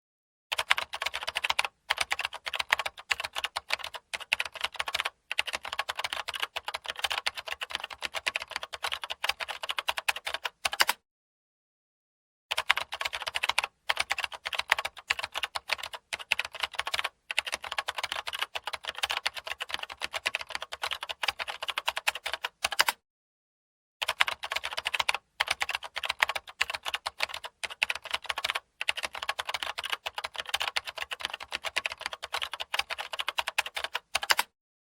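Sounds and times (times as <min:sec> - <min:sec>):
rapid typing on keyboard: 0:00.5 - 0:11.0, 0:12.5 - 0:23.0, 0:24.0 - 0:34.6.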